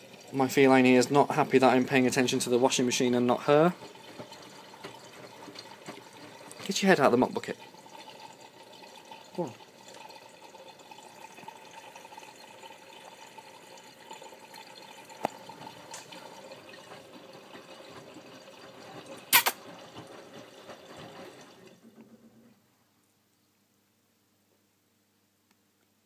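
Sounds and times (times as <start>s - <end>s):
water rushing into washing machine: 0.0s - 22.6s
sharp clack: 19.3s - 19.6s.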